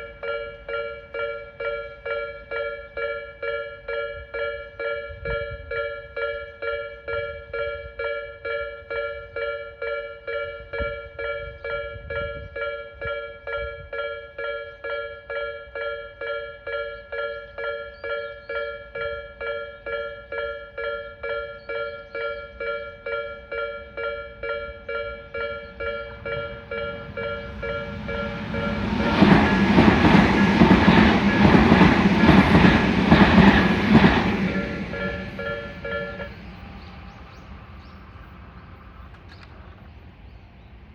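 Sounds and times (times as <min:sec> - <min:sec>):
level-crossing warning bell ringing: 0:00.0 - 0:37.9
train wheels clattering: 0:25.0 - 0:37.9.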